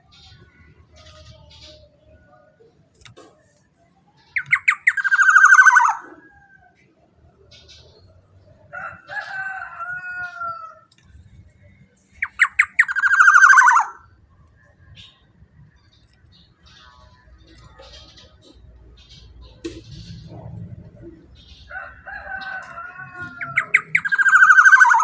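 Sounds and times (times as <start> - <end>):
bird calling harsh stuttering notes: 4.4 - 6.1, 12.2 - 14.0, 23.5 - 25.0
soft gliding bird whistle: 4.4 - 6.3, 12.2 - 14.0, 23.5 - 25.0.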